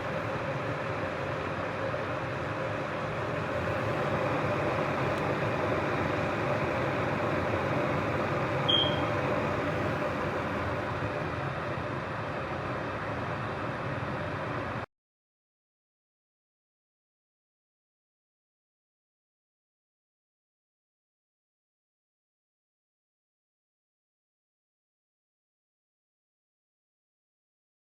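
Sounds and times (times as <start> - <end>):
water boiling in kettle: 0.0 - 14.8.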